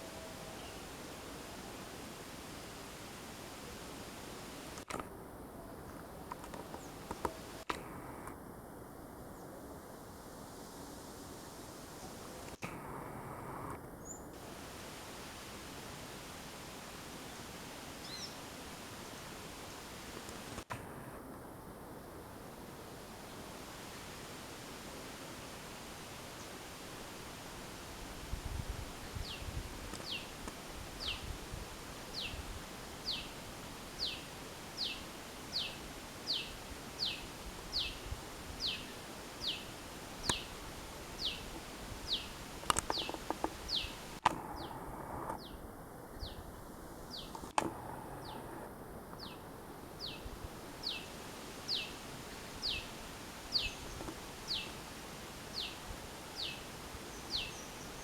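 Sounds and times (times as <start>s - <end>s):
faint clicks: 4.7s - 5.1s, 5.8s - 8.4s, 29.8s - 30.6s, 40.2s - 40.5s, 41.2s - 45.5s, 47.2s - 49.3s, 53.6s - 54.2s
small bird calling: 38.6s - 44.8s.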